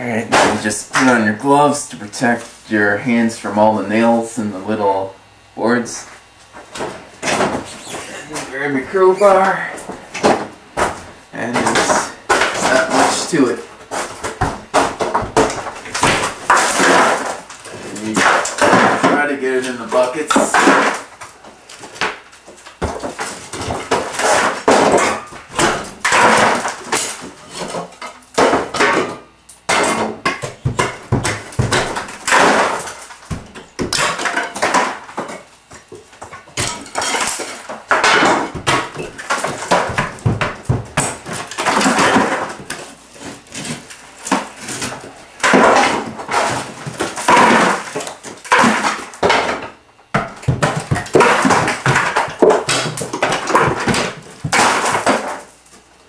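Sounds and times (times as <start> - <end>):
plaster crumbling and falling: 0.3 - 1.5, 6.6 - 7.8, 10.1 - 55.6
crowbar prying plaster and lath: 11.4 - 21.2, 22.8 - 55.5.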